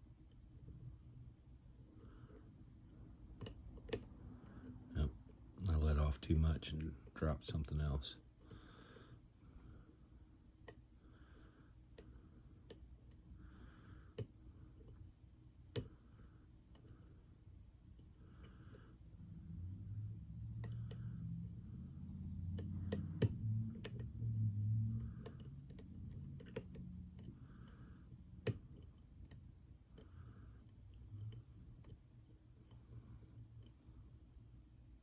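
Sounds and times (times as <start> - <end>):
low handling rumble: 19.1 - 27.5
lock pick metallic clicks: 22.5 - 24.1, 25.0 - 27.4, 28.4 - 29.4.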